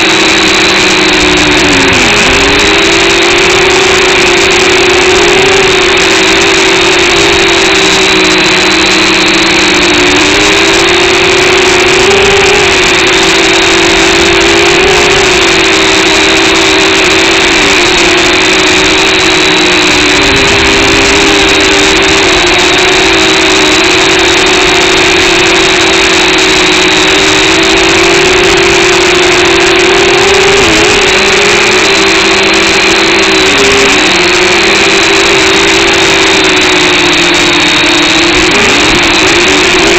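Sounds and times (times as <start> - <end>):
drone propellers buzzing: 0.0 - 39.9.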